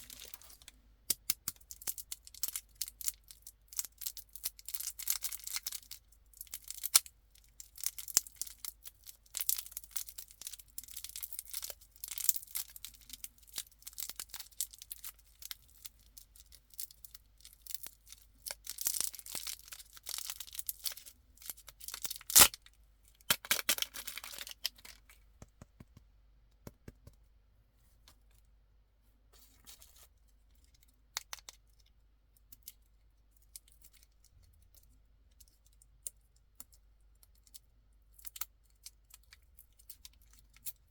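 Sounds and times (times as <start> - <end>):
wrappers crinkling: 0.0 - 0.7.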